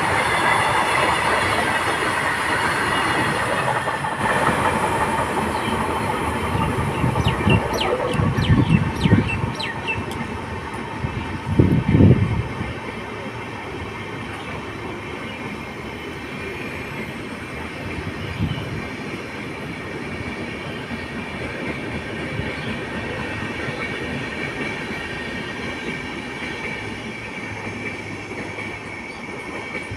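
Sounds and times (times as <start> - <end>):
high squeal from wheels: 0.0 - 10.0
train wheels rumbling on rails: 0.0 - 29.9.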